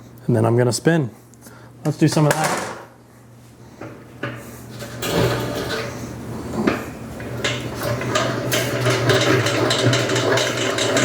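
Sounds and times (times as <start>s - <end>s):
honey extractor humming: 3.8s - 11.0s
crank knocking: 7.4s - 11.0s.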